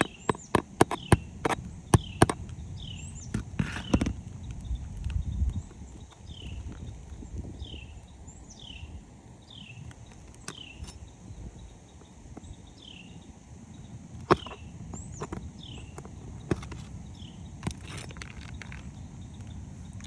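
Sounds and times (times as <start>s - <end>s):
hand tool knocking on shingles: 0.0s - 2.5s, 14.2s - 16.9s
low rumble of movement on roof: 0.0s - 8.2s, 9.8s - 20.0s
bird chirping: 0.0s - 20.0s.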